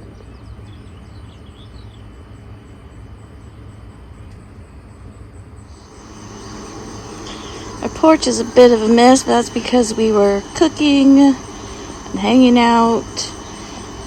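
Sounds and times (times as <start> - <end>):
insect buzzing: 5.6 - 14.0
faint bird chirps: 5.7 - 14.0
steady low rumble: 5.7 - 14.0.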